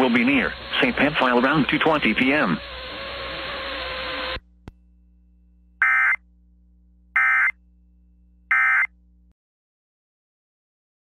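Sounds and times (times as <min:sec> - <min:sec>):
faint low hum: 0:04.4 - 0:09.4.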